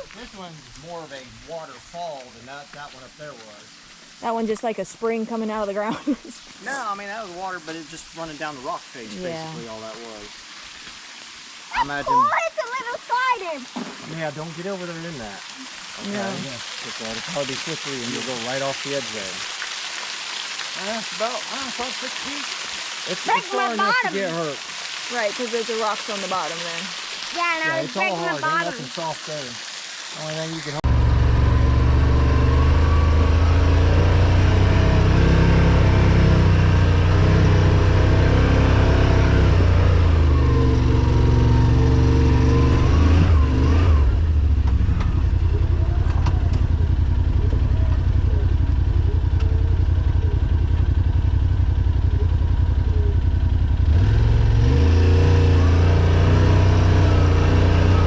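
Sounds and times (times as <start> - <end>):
utility vehicle engine running: 30.9 - 58.0.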